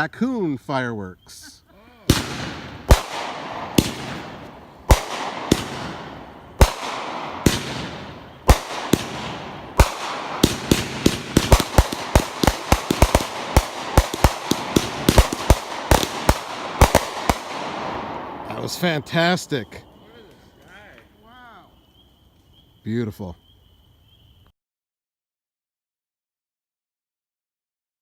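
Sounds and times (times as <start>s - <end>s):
firework reports: 0.0s - 21.8s
hissing crackling firework tail: 1.3s - 21.7s
rapid firework pops: 2.1s - 18.1s.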